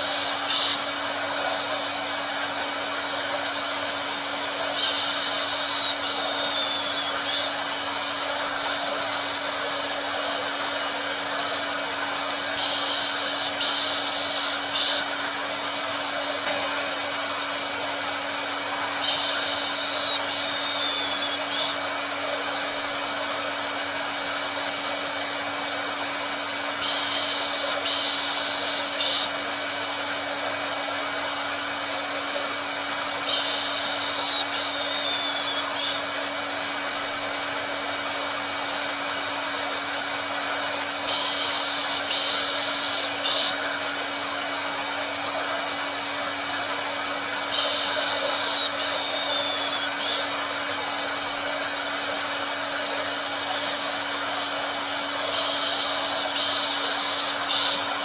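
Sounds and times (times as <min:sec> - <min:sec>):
high hiss: 0:00.0 - 0:36.8, 0:38.1 - 0:58.0
hair dryer running: 0:00.0 - 0:58.0.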